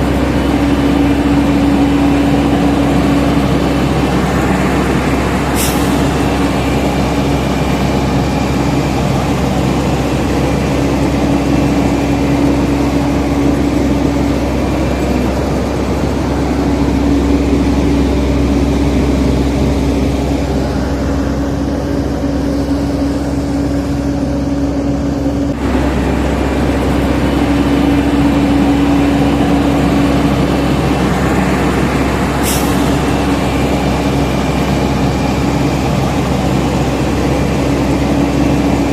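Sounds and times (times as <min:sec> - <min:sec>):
heavy diesel engine running: 0:00.0 - 0:38.9.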